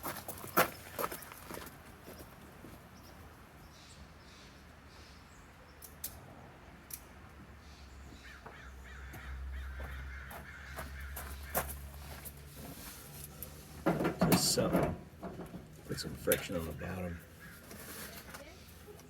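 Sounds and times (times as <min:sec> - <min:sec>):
crows cawing faintly: 0:07.6 - 0:12.4, 0:16.9 - 0:18.3.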